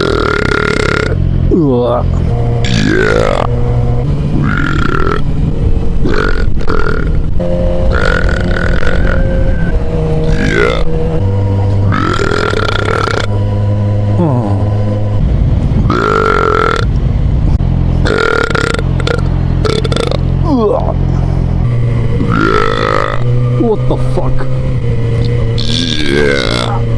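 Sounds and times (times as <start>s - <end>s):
man burping: 0.0s - 3.5s, 4.4s - 5.3s, 6.0s - 7.3s, 7.9s - 9.3s, 10.2s - 10.9s, 11.8s - 13.3s, 15.9s - 16.9s, 18.0s - 20.9s, 22.2s - 24.4s, 25.6s - 26.8s.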